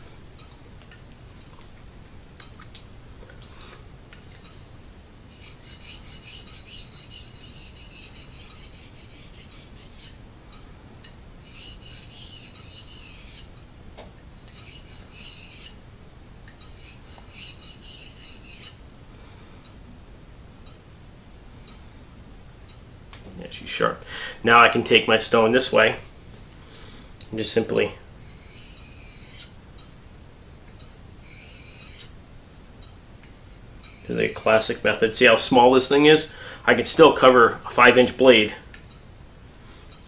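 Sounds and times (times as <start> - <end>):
knife scraping on whetstone: 5.3 - 10.2, 11.4 - 13.6, 14.5 - 15.8, 16.6 - 18.8, 28.2 - 29.6, 31.3 - 32.1, 33.9 - 34.7.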